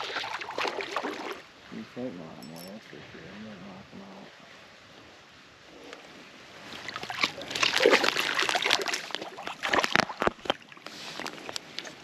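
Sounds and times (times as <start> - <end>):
fish splashing in water: 6.7 - 11.5.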